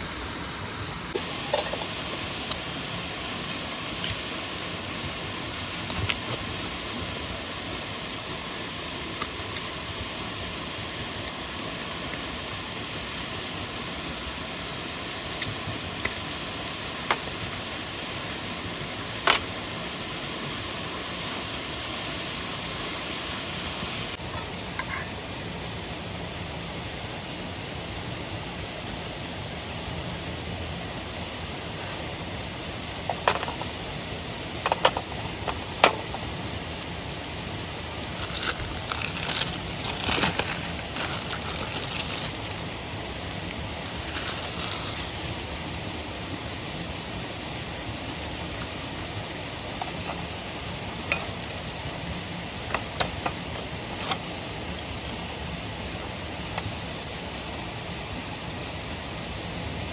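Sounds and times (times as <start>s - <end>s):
mountain stream and waterfall: 0.0s - 59.9s
rustling: 37.9s - 42.7s, 43.8s - 45.2s.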